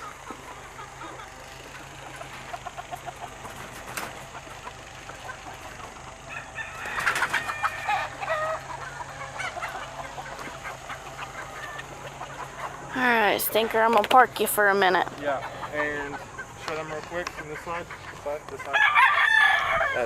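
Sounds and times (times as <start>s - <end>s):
chickens clucking: 0.0s - 20.0s
rooster crowing: 6.2s - 8.8s, 18.6s - 20.0s.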